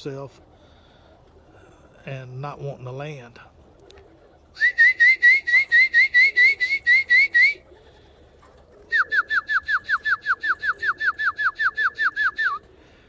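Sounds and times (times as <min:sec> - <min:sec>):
pigeon feed whistle notes: 0:04.6 - 0:07.6, 0:08.8 - 0:12.7.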